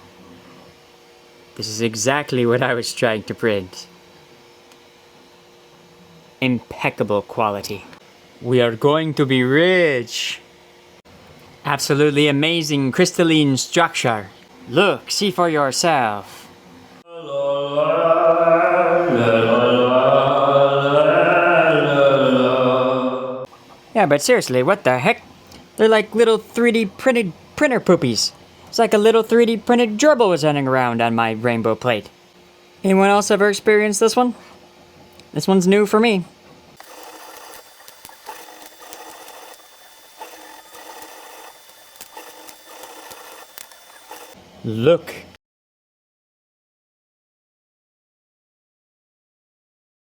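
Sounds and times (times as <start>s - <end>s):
low sung chant: 17.0s - 23.5s
stepper motors whirring: 36.8s - 44.4s.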